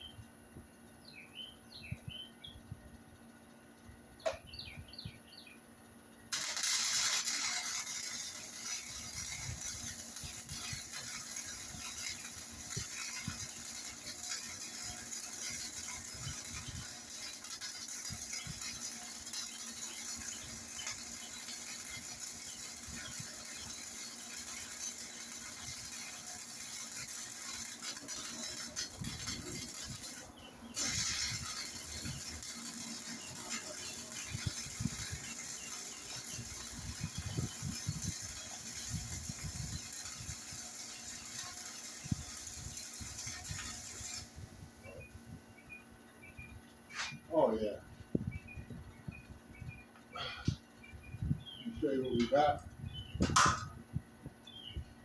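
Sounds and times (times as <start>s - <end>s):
welding arc crackling: 6.3s - 45.5s, 51.2s - 53.8s.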